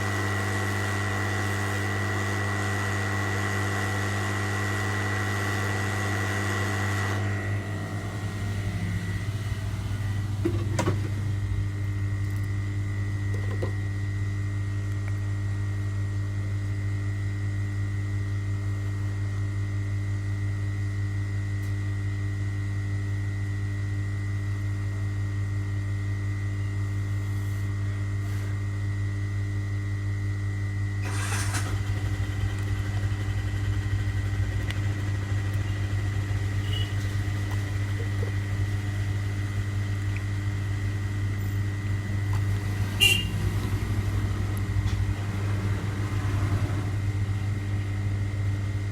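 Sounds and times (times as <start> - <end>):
small motor humming and whining: 0.0 - 11.6, 31.0 - 47.6.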